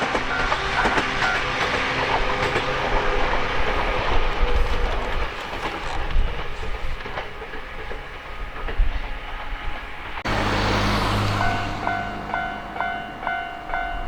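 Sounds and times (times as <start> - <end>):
train wheels clacking on rails: 0.0 - 10.2
level crossing bell ringing: 11.2 - 14.0.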